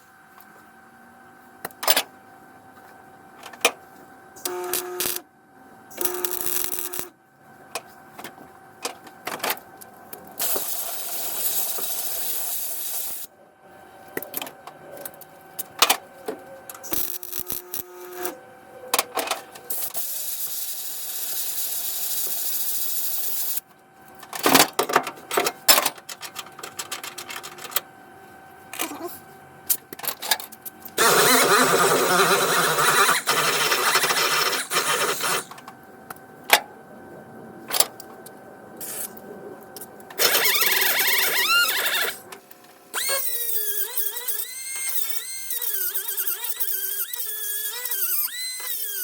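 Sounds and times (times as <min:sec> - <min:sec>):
welder hissing: 0:05.9 - 0:07.1, 0:10.4 - 0:13.3, 0:16.8 - 0:18.4, 0:31.0 - 0:35.5.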